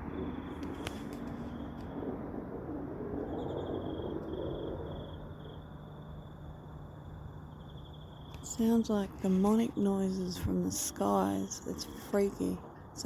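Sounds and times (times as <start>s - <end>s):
low rumbling from the sky: 0.0s - 10.8s
insects trilling: 2.8s - 13.0s.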